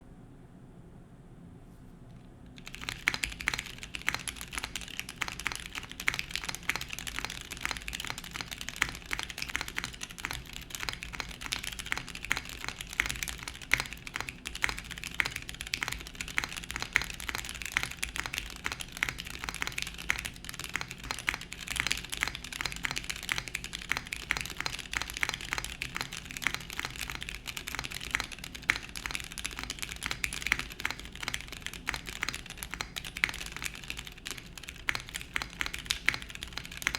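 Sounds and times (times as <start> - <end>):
fast typing on mechanical keyboard: 2.6 - 36.9.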